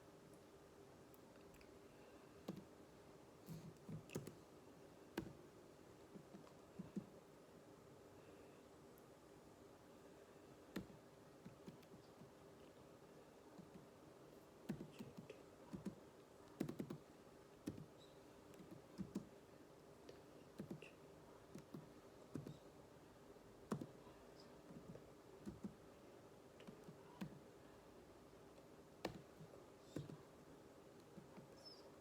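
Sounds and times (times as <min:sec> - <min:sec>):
keyboard keystrokes clicking: 0:23.7 - 0:23.9.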